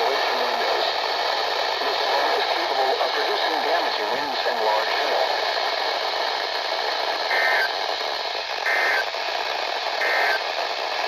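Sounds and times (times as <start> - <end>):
radio static hiss: 0.0 - 11.0
warbling data tones: 7.3 - 7.7, 8.6 - 9.1, 10.0 - 10.4.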